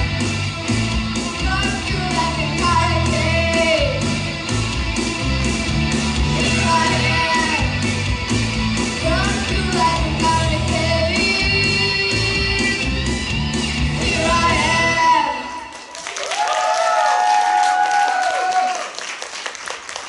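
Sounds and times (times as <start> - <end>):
rock backing with drum beat: 0.0 - 15.1
girl singing a rock ballad: 1.3 - 4.2, 6.2 - 7.9, 8.9 - 12.9, 14.0 - 15.7.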